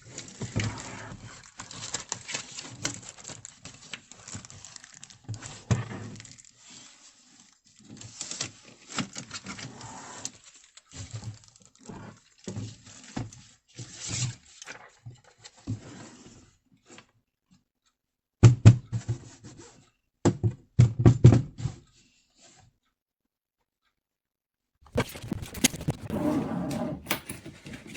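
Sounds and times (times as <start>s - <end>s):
handling rustling clicks and scrapes: 24.9s - 27.9s.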